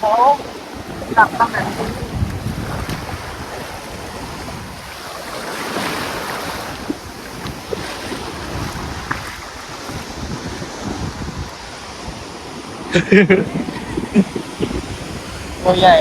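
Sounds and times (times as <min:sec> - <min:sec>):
waves washing onto beach: 0:00.0 - 0:16.0
wind buffeting microphone: 0:00.0 - 0:16.0.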